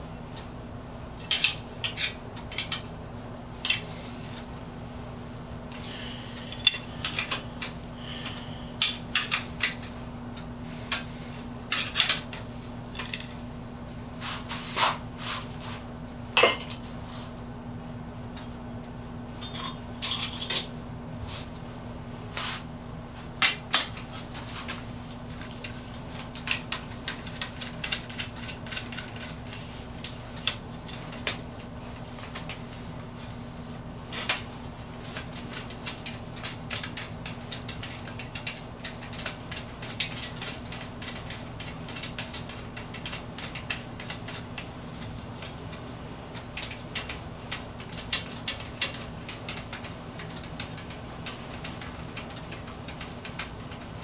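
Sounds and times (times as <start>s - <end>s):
steady low hum: 0.0s - 54.0s
metal tools clinking: 1.2s - 2.9s, 16.4s - 16.8s, 19.4s - 20.7s.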